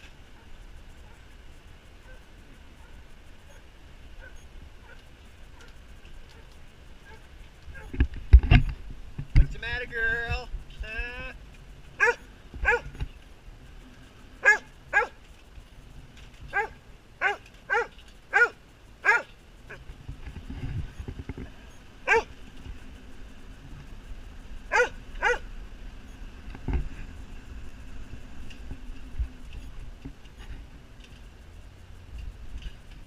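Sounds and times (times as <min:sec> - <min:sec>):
dog barking: 0:00.4 - 0:01.2, 0:02.0 - 0:03.6, 0:12.0 - 0:12.9, 0:14.4 - 0:15.2, 0:16.5 - 0:19.3, 0:22.1 - 0:22.3, 0:24.7 - 0:25.4.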